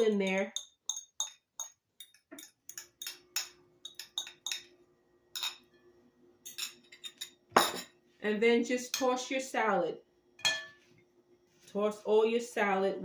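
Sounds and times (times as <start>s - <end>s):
utensil clinking against dishes: 0.0s - 4.7s, 5.3s - 5.8s, 6.4s - 7.9s, 10.4s - 10.8s.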